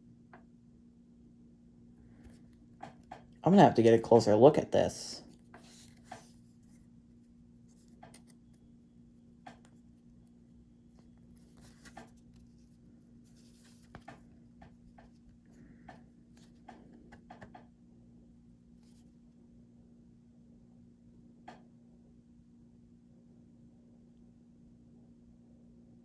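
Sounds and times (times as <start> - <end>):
trading card being handled: 5.3 - 6.8, 7.7 - 8.6, 11.0 - 14.4.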